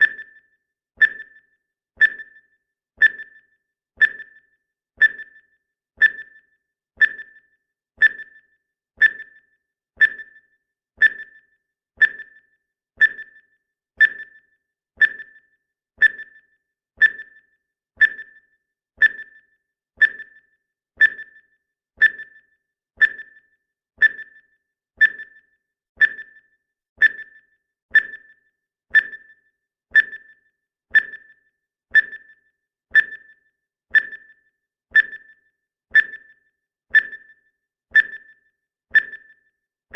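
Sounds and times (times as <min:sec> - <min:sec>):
timer ticking: 0:00.0 - 0:39.6.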